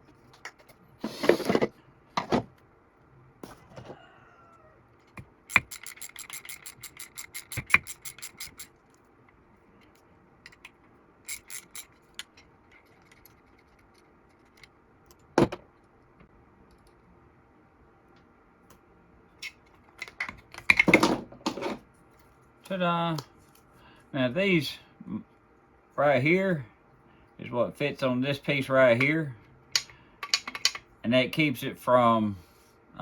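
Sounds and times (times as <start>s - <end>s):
metal parts clattering: 5.5s - 8.7s, 29.8s - 30.8s.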